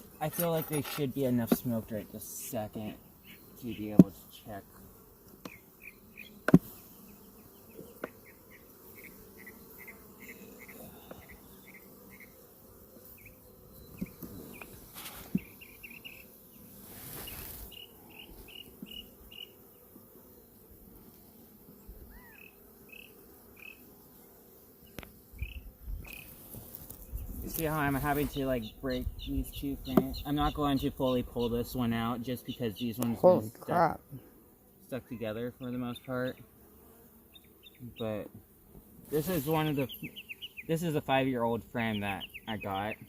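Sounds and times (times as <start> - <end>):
honeybees humming: 0.0 - 43.0
insect chirping: 2.5 - 4.6, 5.4 - 20.6, 22.1 - 23.9, 24.9 - 27.3.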